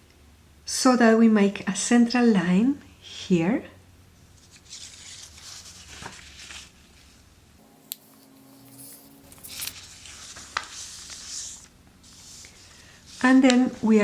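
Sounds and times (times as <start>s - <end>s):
paper rustling as folded: 4.3s - 14.0s.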